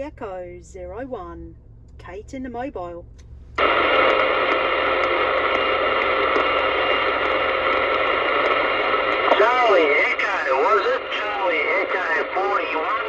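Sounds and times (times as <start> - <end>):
radio static hiss: 3.6 - 13.0.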